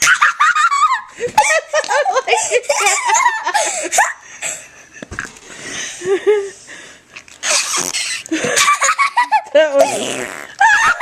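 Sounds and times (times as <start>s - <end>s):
child giggling: 0.0s - 4.6s, 7.9s - 10.0s, 10.6s - 11.0s.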